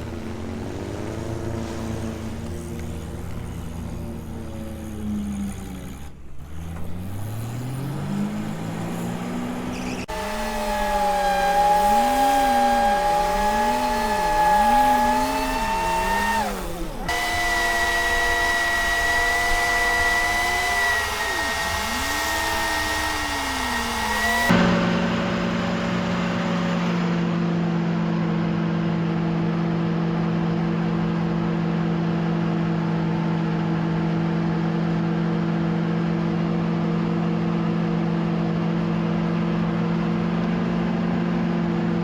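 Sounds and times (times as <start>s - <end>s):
engine revving: 0.0s - 27.8s
drivetrain whine: 0.0s - 42.0s.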